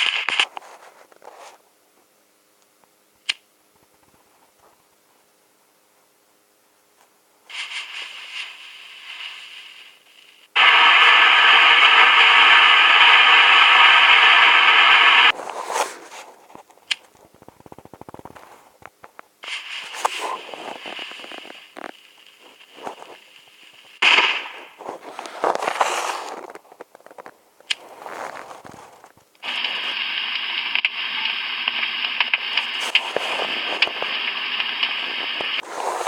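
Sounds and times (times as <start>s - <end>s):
firework crackles and pops: 0.0s - 0.7s, 7.5s - 36.0s
firework hissing: 7.5s - 16.1s, 19.4s - 26.6s, 29.4s - 36.0s
firework bursts: 7.5s - 16.3s, 19.4s - 26.7s, 29.4s - 36.0s.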